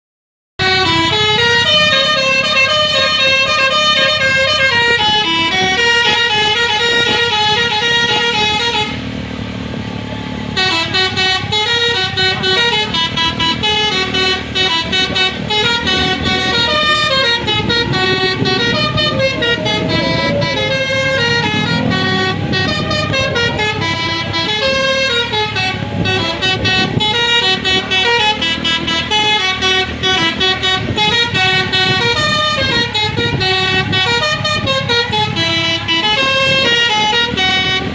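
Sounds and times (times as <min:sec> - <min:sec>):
air horn playing a tune: 0:00.6 - 0:09.2, 0:10.4 - 0:37.9.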